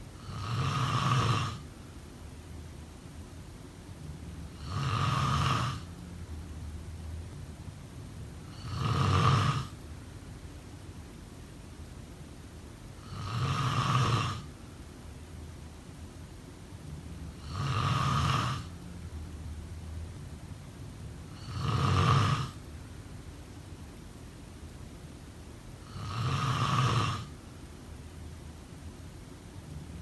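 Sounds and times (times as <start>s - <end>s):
person snoring: 0.2s - 1.6s, 4.5s - 5.9s, 8.4s - 9.8s, 13.0s - 14.5s, 17.4s - 18.8s, 21.3s - 22.6s, 25.8s - 27.3s.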